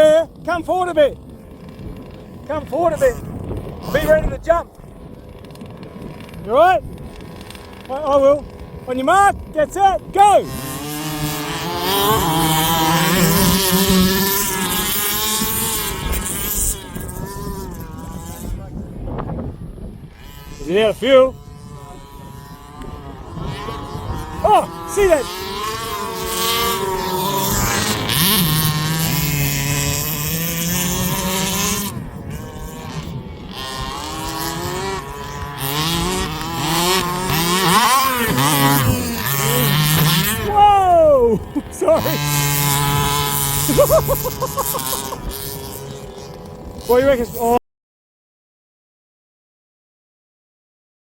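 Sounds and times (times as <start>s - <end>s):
small two-stroke engines buzzing: 0.0s - 47.6s.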